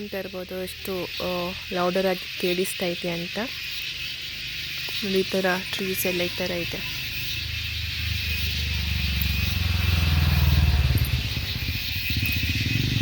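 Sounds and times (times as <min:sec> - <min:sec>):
insects chirping drone: 0:00.0 - 0:13.0
low pulsing engine rumble: 0:06.0 - 0:13.0.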